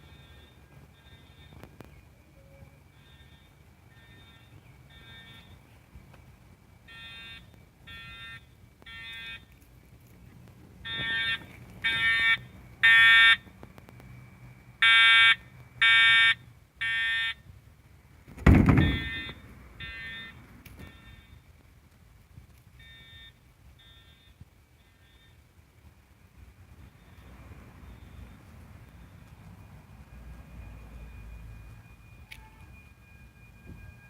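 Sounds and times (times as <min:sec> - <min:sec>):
fire alarm horn blasts: 0:03.0 - 0:05.6, 0:06.9 - 0:09.5, 0:10.8 - 0:13.5, 0:14.8 - 0:17.4, 0:18.8 - 0:21.4, 0:29.0 - 0:34.0
loud thump: 0:18.3 - 0:19.4.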